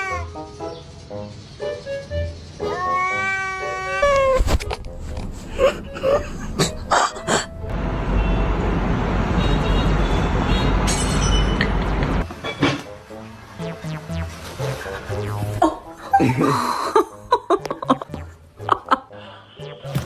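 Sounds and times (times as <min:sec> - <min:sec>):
cat meowing: 0:02.6 - 0:04.4.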